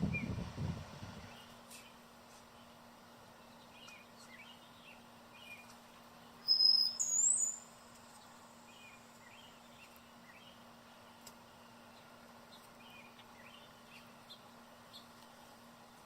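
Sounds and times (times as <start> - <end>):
faint bird chirps: 6.4 - 11.2
songbird high thin whistle: 6.5 - 7.7.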